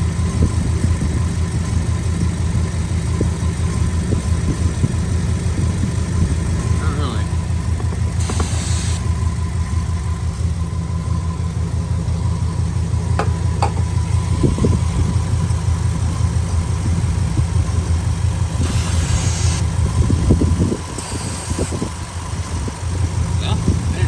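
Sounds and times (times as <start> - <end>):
misfiring engine idling: 0.0 - 24.0
spray can hissing: 8.2 - 9.0, 18.6 - 19.6, 21.0 - 21.8.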